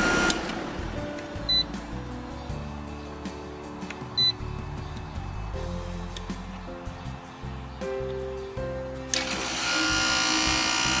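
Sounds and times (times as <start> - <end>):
held chords: 0.0 - 11.0
steady low bass: 4.1 - 8.9.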